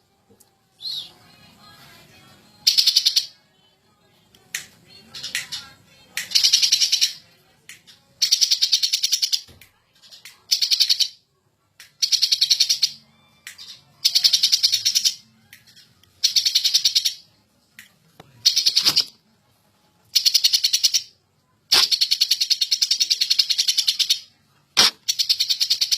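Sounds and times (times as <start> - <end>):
bird singing rapid chattering notes: 13.6 - 17.2.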